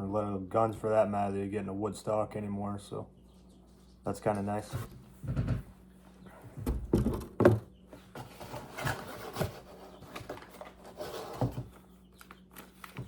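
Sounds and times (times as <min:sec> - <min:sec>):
rubbing and rustling packaging: 0:08.0 - 0:13.0.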